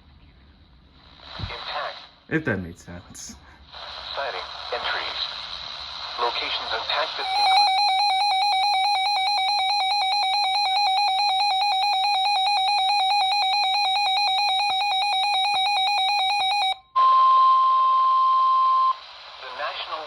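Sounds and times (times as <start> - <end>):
radio hiss: 1.0 - 7.7, 19.0 - 20.0
steady single alarm tone: 7.2 - 19.0
warbling electronic alarm tone: 7.2 - 19.0.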